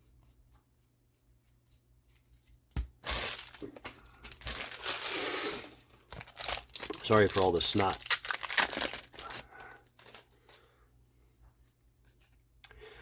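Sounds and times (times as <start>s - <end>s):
foil wrapper tearing and crinkling: 3.0s - 10.3s.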